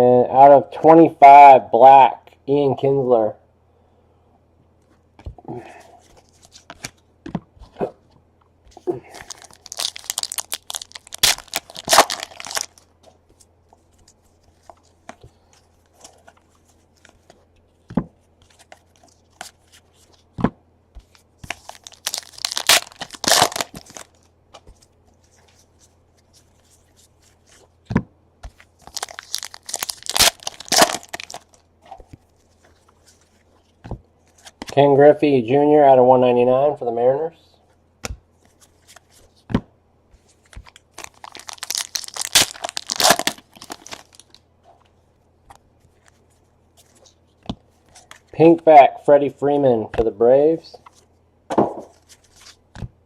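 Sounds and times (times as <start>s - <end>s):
wrappers tearing and crinkling: 8.8s - 12.9s, 21.4s - 24.3s, 28.6s - 31.7s, 40.4s - 44.4s.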